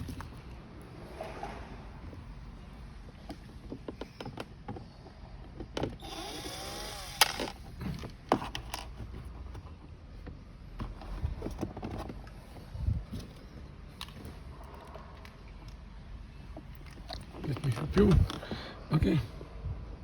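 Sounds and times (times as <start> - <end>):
plastic parts clicking and knocking: 3.0 - 15.9.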